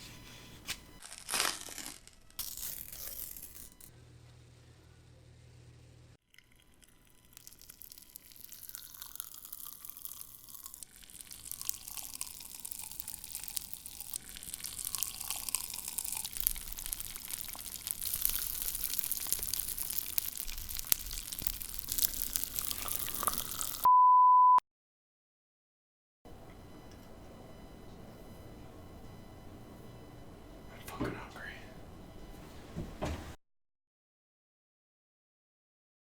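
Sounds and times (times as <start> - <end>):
fine crackling and popping: 0.6 - 3.9, 6.3 - 23.9
loud steady beep: 21.9 - 24.6, 26.3 - 32.6.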